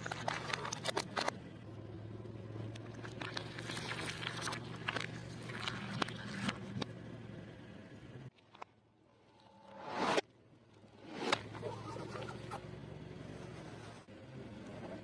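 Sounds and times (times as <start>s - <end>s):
crunchy chewing of fried food: 2.8s - 6.6s.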